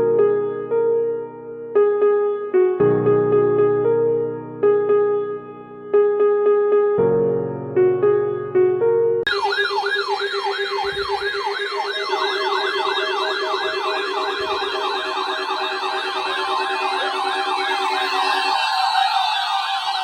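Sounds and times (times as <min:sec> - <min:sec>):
piano music: 0:00.0 - 0:20.0
electronic yelp sirens: 0:09.3 - 0:20.0
pulsing alarm tone: 0:09.3 - 0:20.0.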